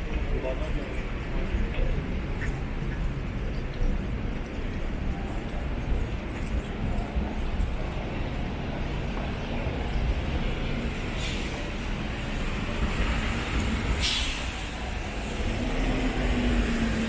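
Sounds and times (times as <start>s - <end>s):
road traffic passing: 8.6s - 17.0s.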